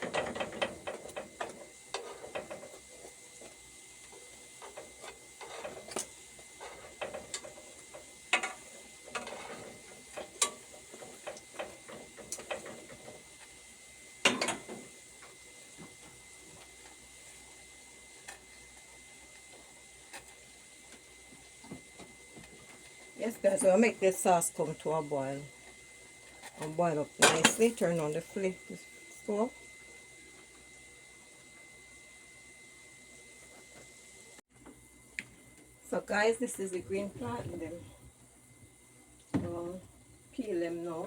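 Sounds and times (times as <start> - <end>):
utensils clattering on pots: 0.0 - 2.7, 14.2 - 14.8, 26.4 - 28.4
faint frying sizzle: 0.0 - 41.0.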